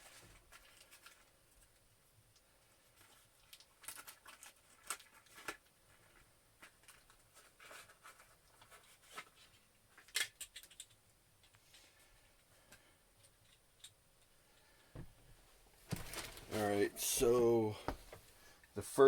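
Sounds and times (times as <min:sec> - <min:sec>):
package rustling: 0:02.9 - 0:10.9, 0:15.9 - 0:18.3.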